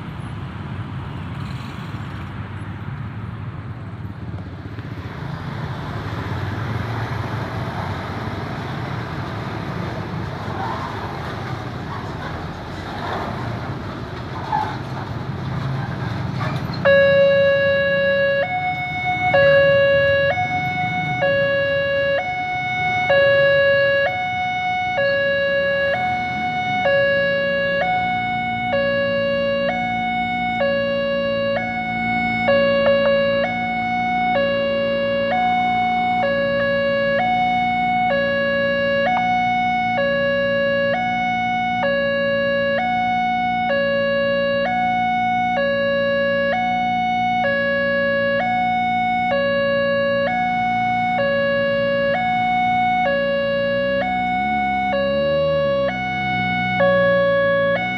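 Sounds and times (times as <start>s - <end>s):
road traffic noise: 0.0s - 57.9s
two-tone crossing warning siren: 15.2s - 57.9s.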